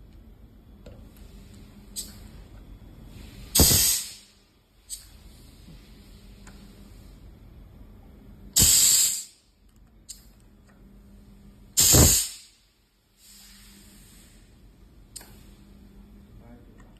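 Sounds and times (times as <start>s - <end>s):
faint steady hum: 0.0s - 16.9s
compressed air hiss: 3.1s - 7.2s, 8.6s - 9.4s, 11.8s - 14.6s.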